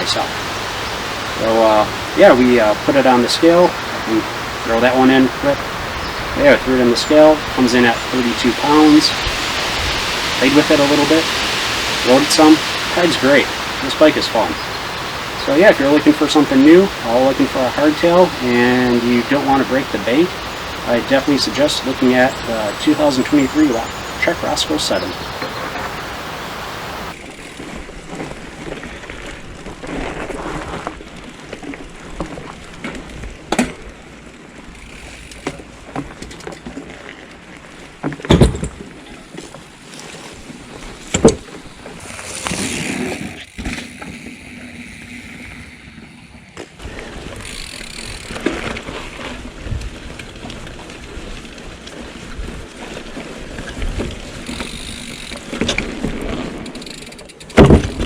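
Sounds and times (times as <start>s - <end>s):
bike tyre and drivetrain rattle: 0.0s - 58.0s.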